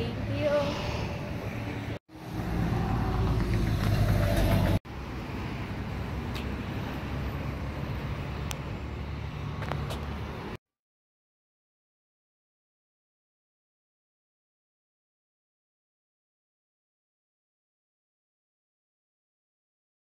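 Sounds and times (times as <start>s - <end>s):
car engine and road rumble: 1.4s - 10.6s.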